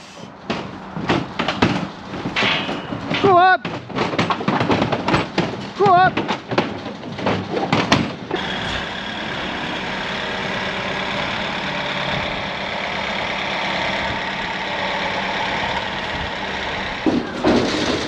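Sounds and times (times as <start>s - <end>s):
large engine idling: 5.6s - 18.0s.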